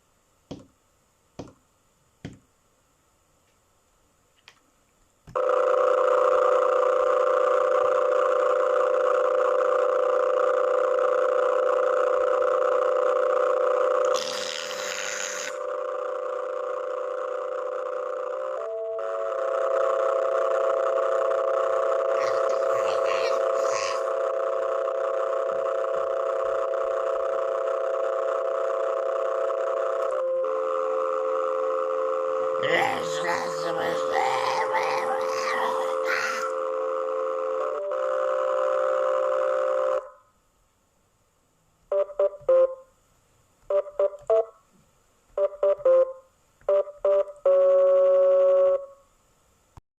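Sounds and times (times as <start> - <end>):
drone of held tones: 5.4 - 40.3, 45.4 - 49.1.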